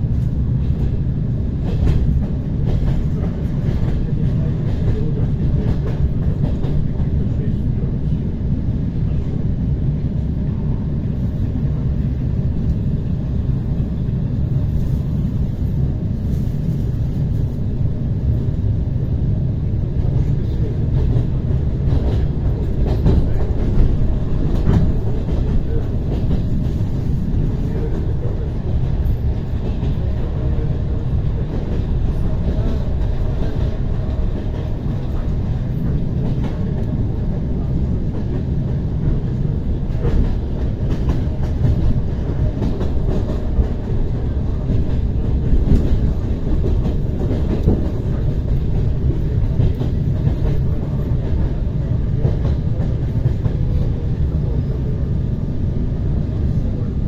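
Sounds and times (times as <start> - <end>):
train wheels rumbling on rails: 0.0 - 57.0.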